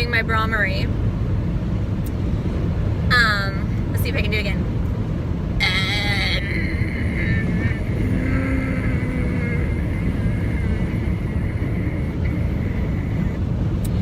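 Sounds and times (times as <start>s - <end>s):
car road noise from inside: 0.0s - 14.0s
woman humming: 5.6s - 13.4s.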